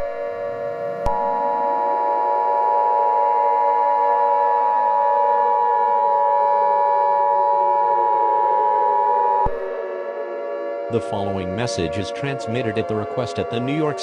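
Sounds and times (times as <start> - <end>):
low siren-like tones: 0.0 - 14.0
steady alert tone: 10.9 - 14.0.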